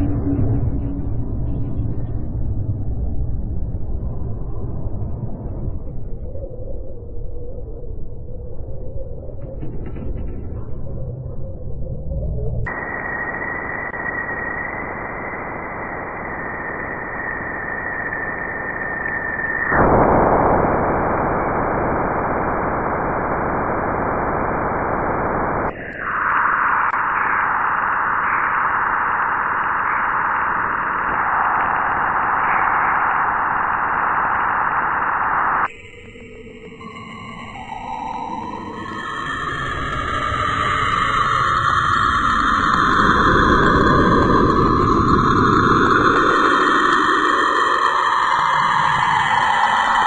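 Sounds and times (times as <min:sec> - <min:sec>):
static-like hiss: 0:12.7 - 0:35.7.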